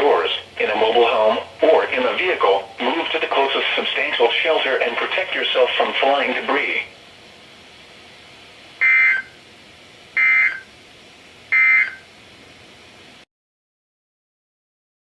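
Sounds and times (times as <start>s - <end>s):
radio hiss: 0.0s - 8.1s.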